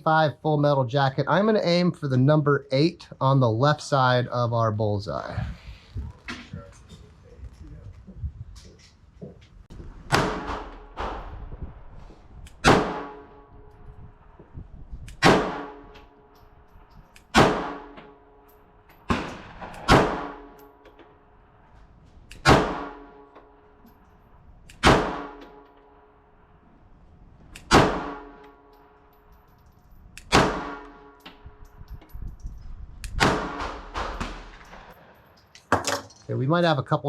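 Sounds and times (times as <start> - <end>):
pistol shots with ringing echo: 10.1 - 11.4, 12.6 - 13.5, 15.2 - 15.9, 17.2 - 18.3, 19.0 - 20.8, 22.4 - 23.3, 24.8 - 26.0, 27.6 - 29.0, 30.2 - 31.5, 33.1 - 35.2.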